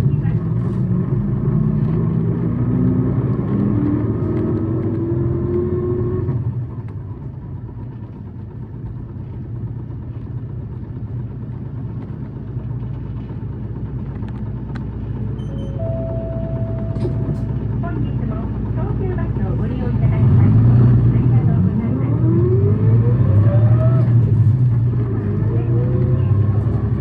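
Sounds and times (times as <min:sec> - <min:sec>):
bus diesel engine revving: 0:00.0 - 0:06.6, 0:15.6 - 0:27.0
road drone: 0:00.0 - 0:27.0.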